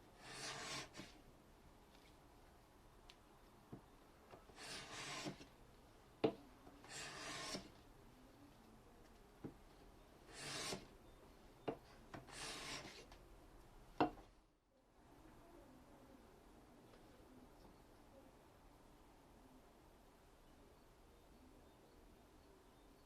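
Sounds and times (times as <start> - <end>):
steel hand tool rasping: 0.2 - 1.1, 4.6 - 5.4, 6.9 - 7.7, 10.3 - 10.8, 12.3 - 13.0.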